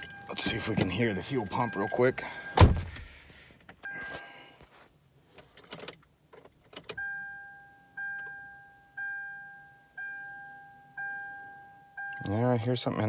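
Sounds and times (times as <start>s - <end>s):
car warning chime: 0.0s - 2.9s, 3.8s - 4.6s, 6.9s - 12.8s.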